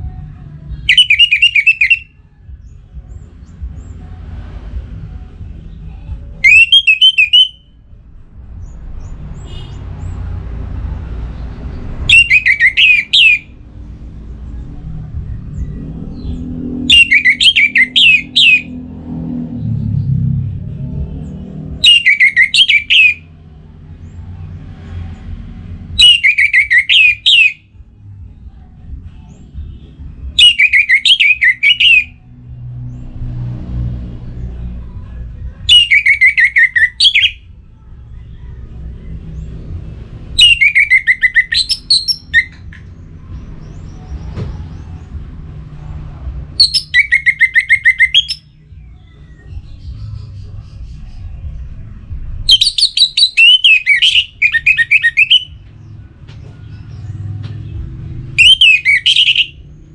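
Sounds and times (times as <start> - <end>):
thrush singing: 0.0 - 59.9
low background rumble: 7.6 - 12.1.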